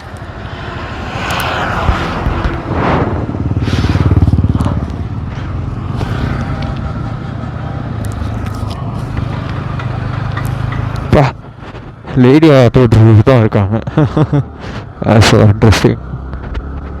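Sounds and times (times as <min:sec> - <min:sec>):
vehicles passing by: 0:00.0 - 0:17.0
motorcycle engine running: 0:01.4 - 0:12.2.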